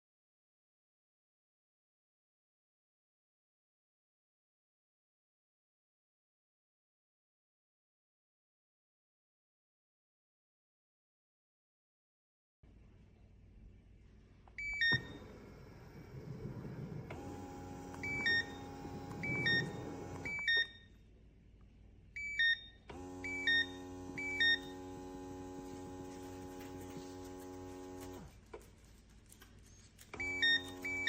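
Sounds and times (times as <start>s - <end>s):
massager motor humming: 14.6s - 20.6s, 22.9s - 28.5s, 30.1s - 31.0s.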